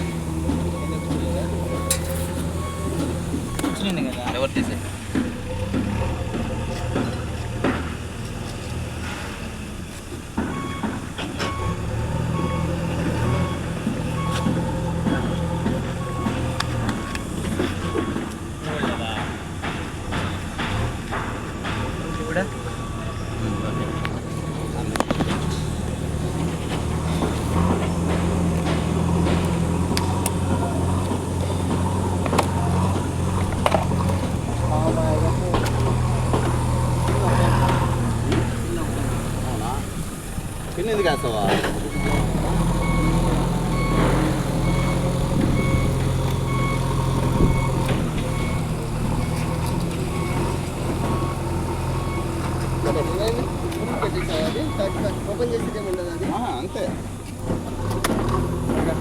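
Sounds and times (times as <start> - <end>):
reversing alarm beeping: 0.0 - 8.1, 10.4 - 57.0
vehicle engine running: 0.0 - 59.0
sharp clicks and ticks: 23.7 - 39.8.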